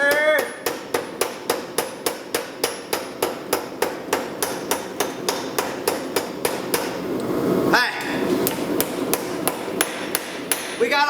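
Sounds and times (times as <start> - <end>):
hammer striking steel on anvil: 0.0 - 7.0, 8.0 - 11.0.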